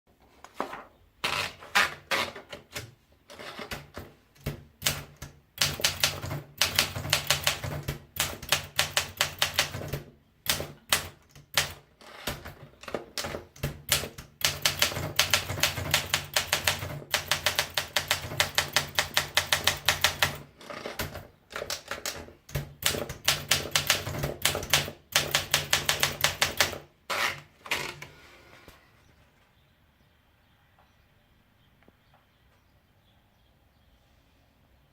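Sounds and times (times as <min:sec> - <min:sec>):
typewriter keystroke clacks: 0:03.5 - 0:26.9.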